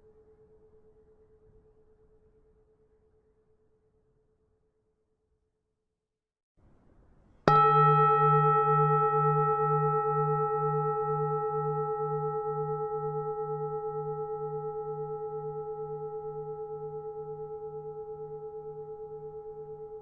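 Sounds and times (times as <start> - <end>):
temple bell ringing: 7.5 - 20.0.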